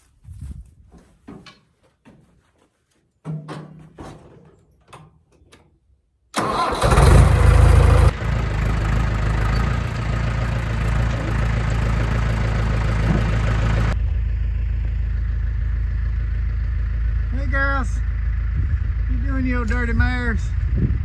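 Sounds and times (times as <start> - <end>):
tractor engine cranking: 6.4 - 14.0
tractor engine idling: 6.4 - 21.0.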